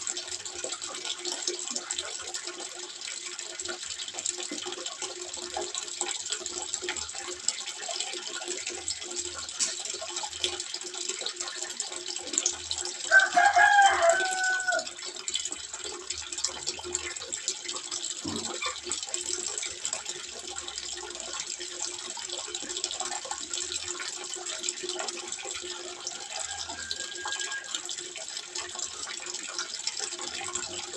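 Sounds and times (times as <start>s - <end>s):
water trickling into pond: 0.0s - 30.9s.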